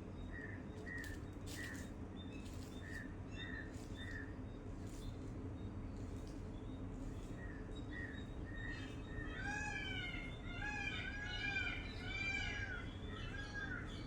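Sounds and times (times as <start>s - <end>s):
birds mewing calls: 8.9s - 14.0s.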